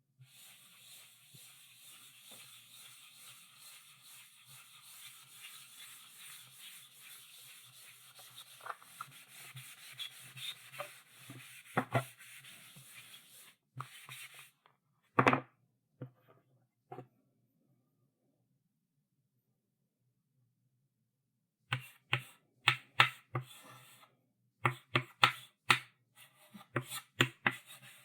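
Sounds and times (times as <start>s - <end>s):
chalk scratching on blackboard: 0.2s - 14.5s, 26.2s - 28.0s.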